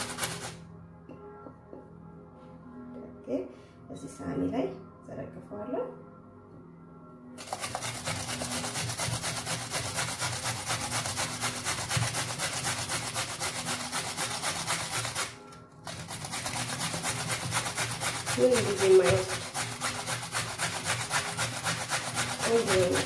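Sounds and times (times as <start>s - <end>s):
carrot grating: 7.4s - 23.0s.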